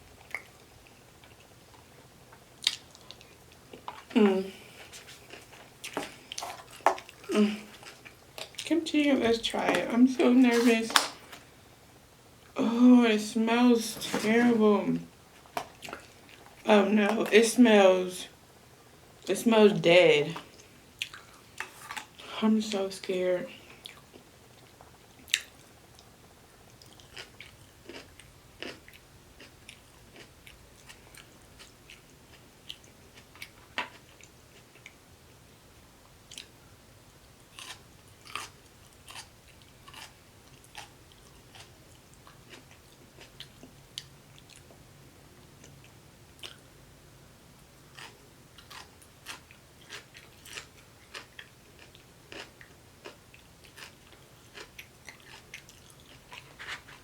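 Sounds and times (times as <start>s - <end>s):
chewing crunches: 0.2s - 8.7s, 26.7s - 35.0s, 37.5s - 44.7s, 47.9s - 57.0s.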